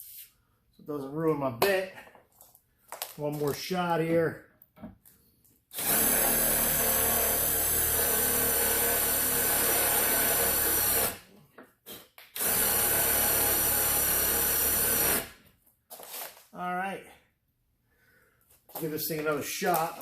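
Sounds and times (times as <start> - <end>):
power drill running: 5.8 - 11.2, 12.4 - 15.4.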